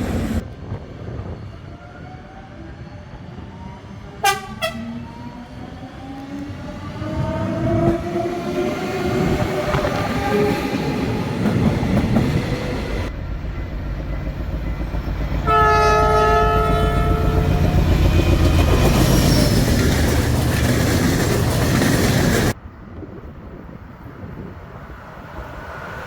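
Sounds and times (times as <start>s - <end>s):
train wheels rumbling on rails: 0.0s - 26.0s
train horn: 4.2s - 5.0s, 15.4s - 17.8s.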